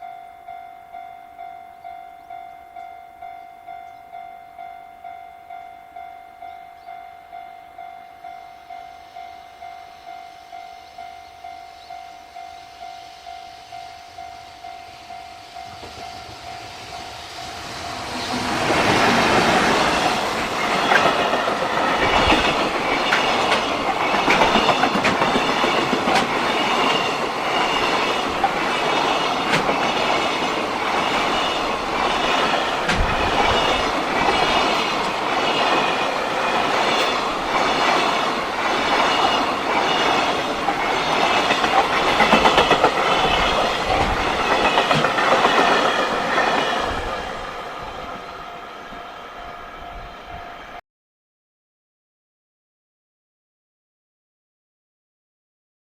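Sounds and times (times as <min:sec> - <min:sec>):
level crossing warning bell: 0:00.0 - 0:50.8
train wheels clacking on rails: 0:12.8 - 0:49.1.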